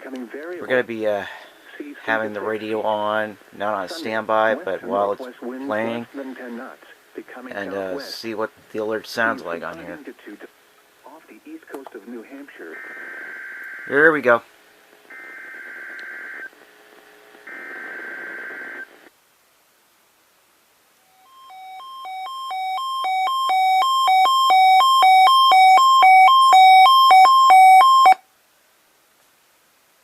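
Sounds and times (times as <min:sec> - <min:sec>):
two-pitch alternating alert beep: 0:21.3 - 0:28.2.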